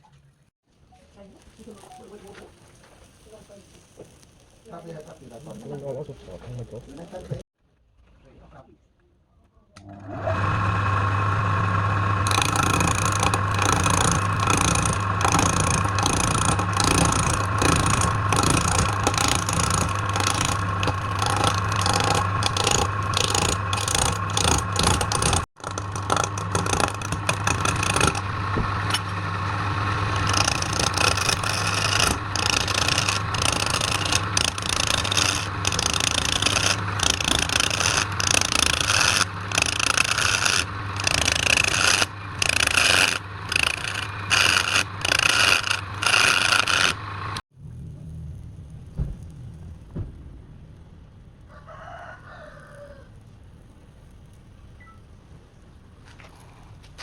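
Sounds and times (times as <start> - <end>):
woodworking machine humming: 9.8 - 47.4
tool scraping wood: 12.2 - 47.4.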